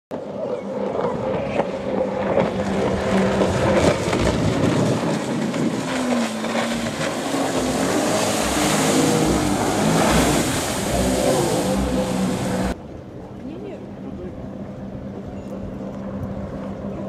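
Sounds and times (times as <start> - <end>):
jet ski engine running: 0.1 - 17.0
wind: 0.1 - 17.0
water spray rushing: 5.1 - 12.8.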